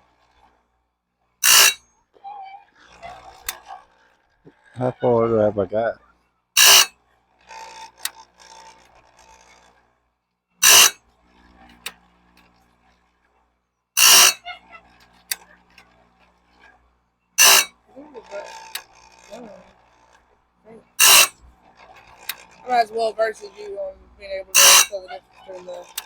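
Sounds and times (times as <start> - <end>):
faint scraping and clicks: 1.4 - 1.8, 6.6 - 10.0, 10.6 - 13.4, 14.0 - 23.8, 24.6 - 26.0
grinding wheel on saw teeth: 1.4 - 1.8, 6.6 - 10.0, 10.6 - 12.0, 14.0 - 16.0, 17.4 - 26.0.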